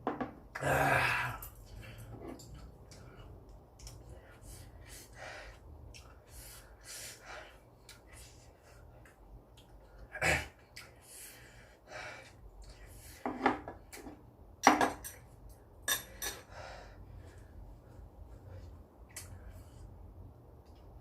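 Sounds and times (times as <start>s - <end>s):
utensils clinking against dish: 14.6s - 16.5s.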